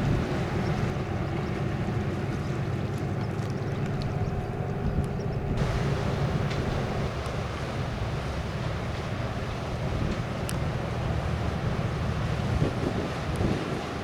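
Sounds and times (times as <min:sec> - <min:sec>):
boat engine rumbling: 0:00.0 - 0:14.0
wind noise on microphone: 0:11.7 - 0:14.0.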